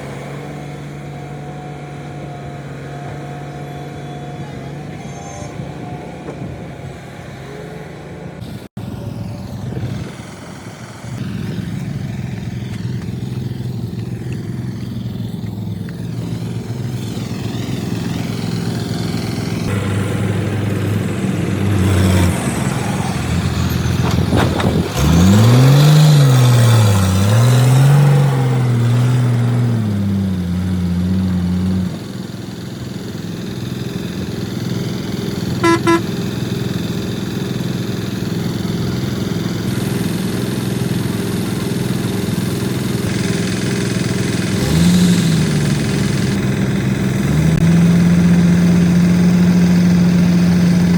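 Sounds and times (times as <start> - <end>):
heavy vehicle engine revving: 0.0 - 50.9
horn beeps: 35.6 - 36.2.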